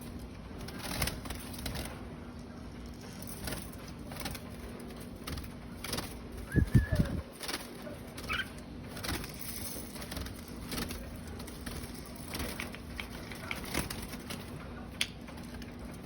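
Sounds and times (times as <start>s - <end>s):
steady low hum: 0.0s - 16.0s
bird warbling: 6.4s - 7.3s, 8.2s - 8.6s.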